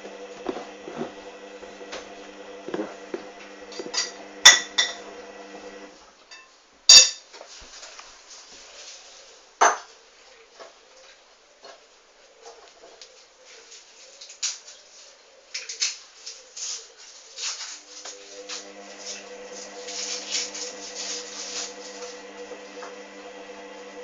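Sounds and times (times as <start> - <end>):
washing machine drum motor humming: 0.0 - 5.9, 17.8 - 24.0.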